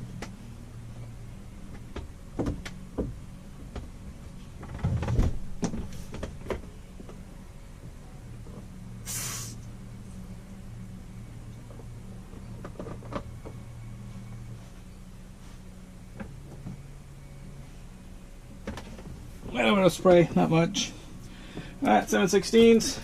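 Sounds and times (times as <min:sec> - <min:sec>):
low steady hum: 0:00.0 - 0:23.0
water spraying hiss: 0:09.0 - 0:09.6.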